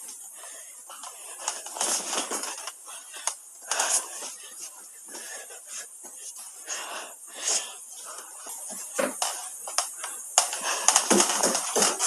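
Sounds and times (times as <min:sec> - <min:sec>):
hard objects clicking and clattering: 0:09.0 - 0:12.0.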